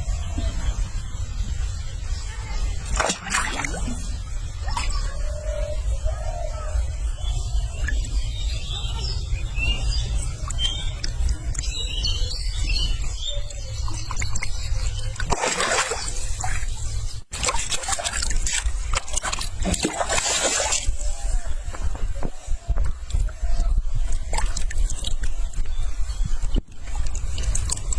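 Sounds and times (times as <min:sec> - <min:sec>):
water splashing: 0:02.8 - 0:05.1, 0:13.8 - 0:22.3
wind rumble on microphone: 0:16.3 - 0:27.9.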